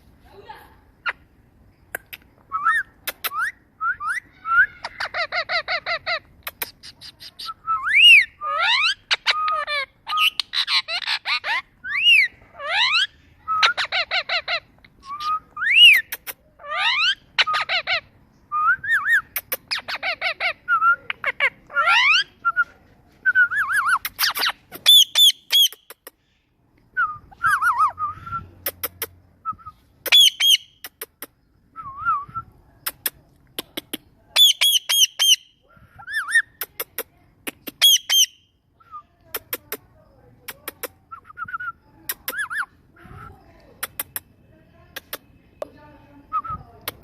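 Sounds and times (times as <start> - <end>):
parrot squawking and chirping: 2.6 - 22.4, 23.5 - 26.2, 27.3 - 29.2, 30.0 - 31.2, 32.9 - 38.5, 42.2 - 42.8.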